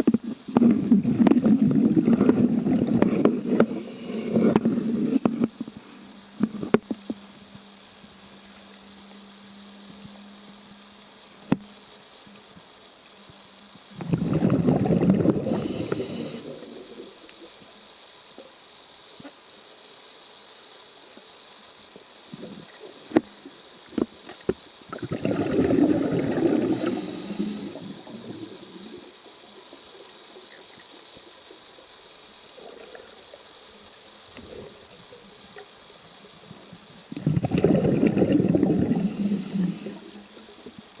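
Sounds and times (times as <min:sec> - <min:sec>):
exhaled bubbles gurgling underwater: 0:00.0 - 0:05.4, 0:14.0 - 0:17.6, 0:24.9 - 0:29.8, 0:36.5 - 0:40.8.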